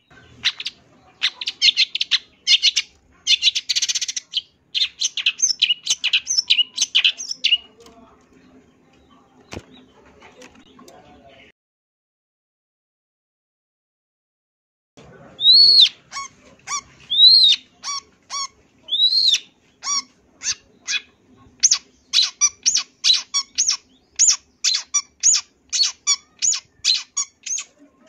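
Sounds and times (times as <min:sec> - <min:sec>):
bird whistling song: 0:00.0 - 0:07.7, 0:15.4 - 0:16.0, 0:17.1 - 0:27.7.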